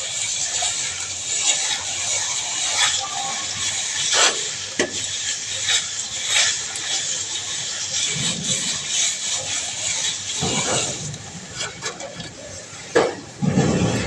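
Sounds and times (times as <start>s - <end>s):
steady hiss: 0.0s - 14.0s.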